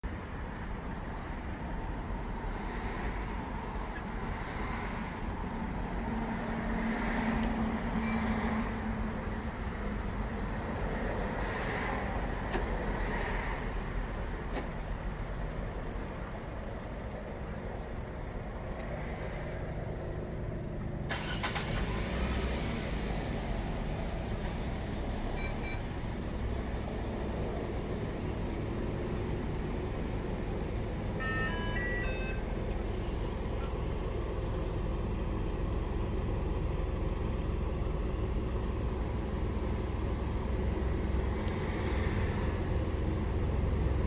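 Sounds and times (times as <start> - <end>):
car engine idling: 19.9 - 44.0.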